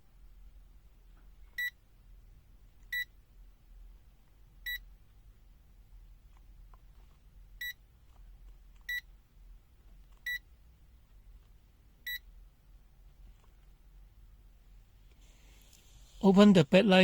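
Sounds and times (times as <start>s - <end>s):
multimeter beeps: 2.9s - 3.1s, 7.6s - 7.8s, 8.9s - 9.1s, 10.3s - 10.5s, 12.0s - 12.3s.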